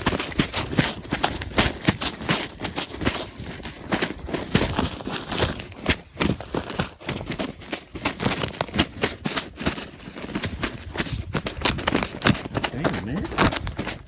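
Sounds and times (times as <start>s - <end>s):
rustling and crunching in dry brush: 0.0s - 14.0s.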